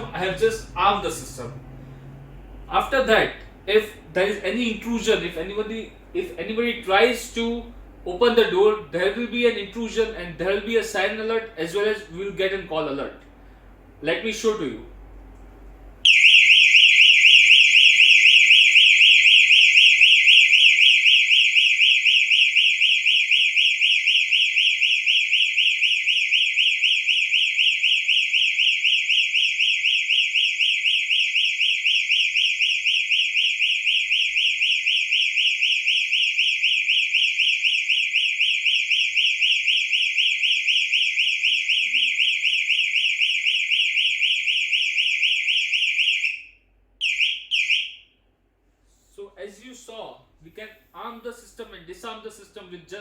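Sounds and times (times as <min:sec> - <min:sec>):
warbling alarm siren: 0:00.0 - 0:02.7, 0:16.1 - 0:48.0.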